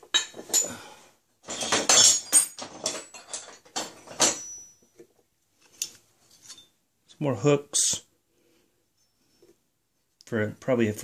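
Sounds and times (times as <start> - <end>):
steel tools clinking: 1.5 - 4.8, 6.3 - 6.8.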